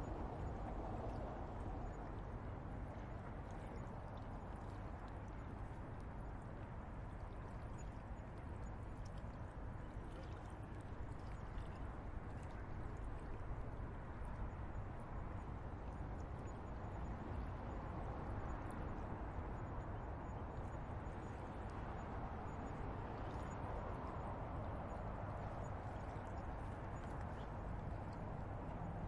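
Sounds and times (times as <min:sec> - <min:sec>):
flowing river water: 0:00.0 - 0:29.0.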